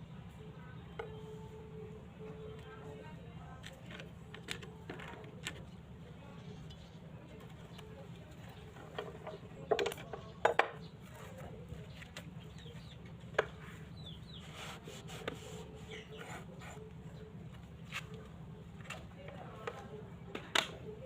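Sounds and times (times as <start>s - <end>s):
steady low hum: 0.0s - 21.0s
tools clicking and knocking: 8.9s - 10.8s.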